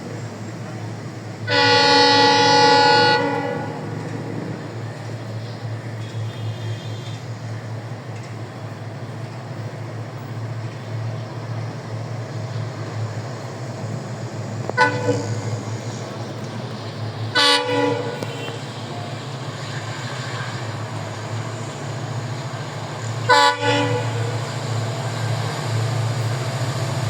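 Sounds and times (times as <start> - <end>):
locomotive horn blast: 1.5 - 4.0, 6.0 - 7.3, 14.7 - 15.6, 17.3 - 19.0, 23.0 - 24.6.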